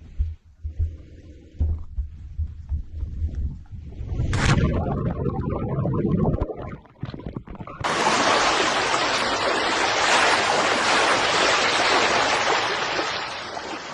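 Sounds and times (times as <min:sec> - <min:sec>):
sea surf rushing: 0:07.8 - 0:13.9.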